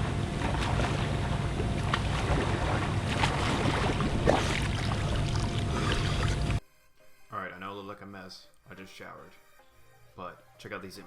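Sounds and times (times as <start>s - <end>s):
short water splashes: 0.0s - 6.6s
water churning while swimming: 0.0s - 6.6s.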